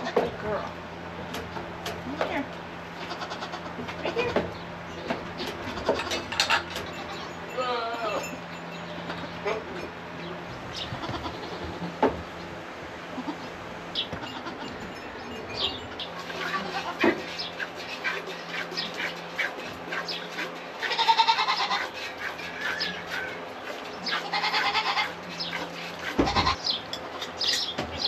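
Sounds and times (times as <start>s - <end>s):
goat bleating: 3.0s - 4.4s, 5.6s - 8.4s, 11.0s - 11.9s, 14.2s - 14.8s, 16.2s - 19.2s, 20.8s - 23.4s, 24.0s - 27.2s.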